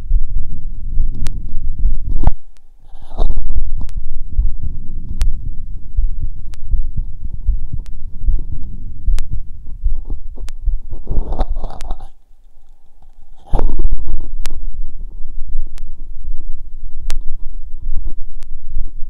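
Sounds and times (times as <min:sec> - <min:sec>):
stethoscope rubbing noise: 0:00.7 - 0:05.7, 0:06.7 - 0:15.4.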